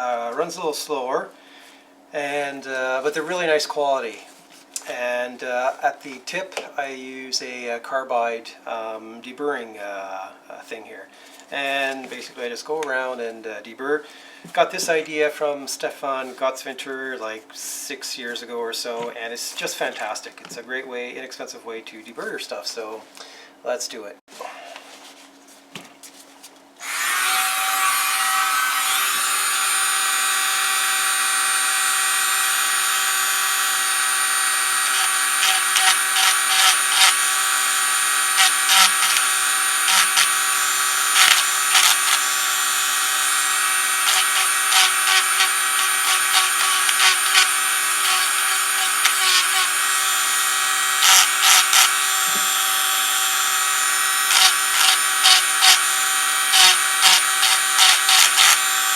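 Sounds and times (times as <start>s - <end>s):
rotary tool whining: 26.8s - 58.9s
burr scraping metal: 34.8s - 42.7s, 43.3s - 49.9s.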